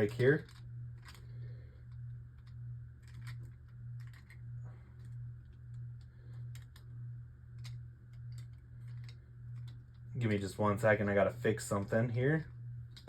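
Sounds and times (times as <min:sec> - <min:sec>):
plastic parts clicking: 0:00.0 - 0:01.3, 0:02.3 - 0:04.4
low pulsing hum: 0:00.0 - 0:13.0.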